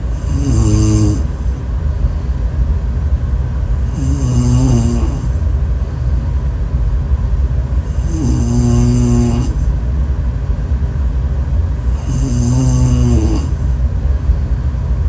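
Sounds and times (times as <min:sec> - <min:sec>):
person snoring: 0:00.0 - 0:01.3, 0:03.8 - 0:05.4, 0:07.9 - 0:09.7, 0:11.9 - 0:13.6.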